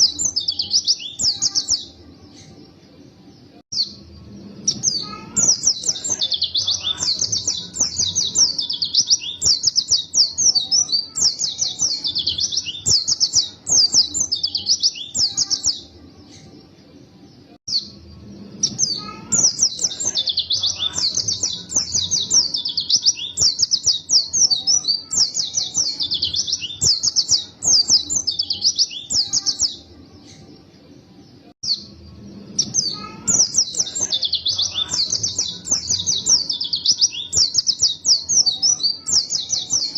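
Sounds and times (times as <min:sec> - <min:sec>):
bird twittering song: 0:00.0 - 0:16.7, 0:17.3 - 0:39.9.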